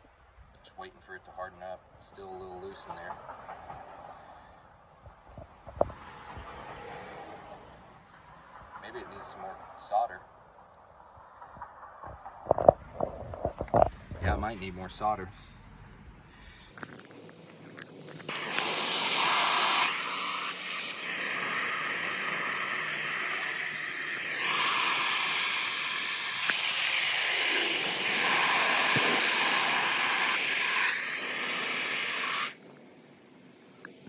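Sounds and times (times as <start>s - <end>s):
gas torch flame hissing: 16.8s - 32.6s.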